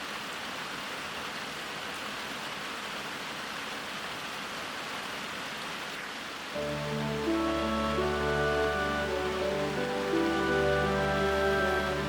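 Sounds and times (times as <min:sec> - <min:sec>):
steady rain: 0:00.0 - 0:12.0.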